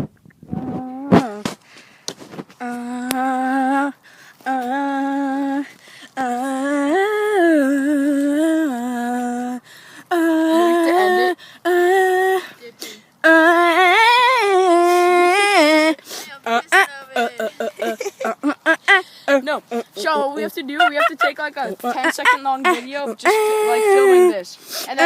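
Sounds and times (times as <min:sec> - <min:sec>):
person humming: 0:00.5 - 0:01.6, 0:02.6 - 0:25.0.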